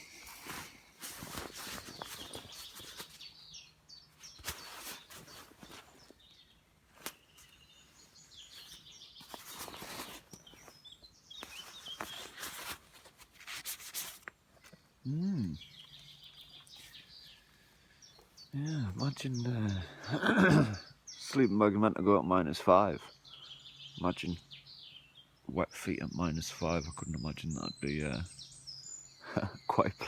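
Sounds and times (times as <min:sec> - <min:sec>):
rustling noise: 0:00.0 - 0:14.9
small birds chirping: 0:00.0 - 0:30.0
person murmuring: 0:15.0 - 0:15.7, 0:18.6 - 0:20.9.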